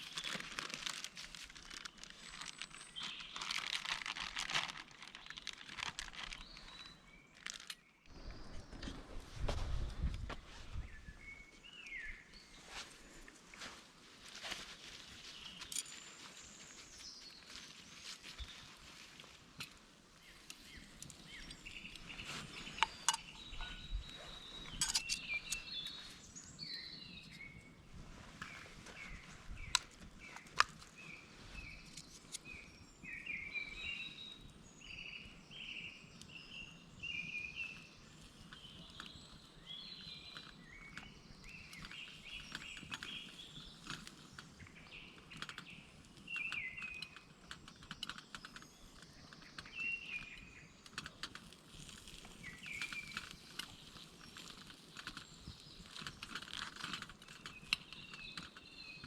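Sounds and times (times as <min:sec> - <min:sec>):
songbirds singing: 0:00.0 - 0:13.8, 0:14.4 - 0:59.0
sharp clicks and snaps: 0:41.7 - 0:59.0.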